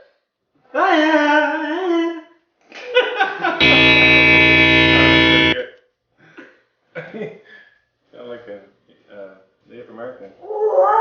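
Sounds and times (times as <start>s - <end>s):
distorted electric guitar chord: 3.6s - 5.6s.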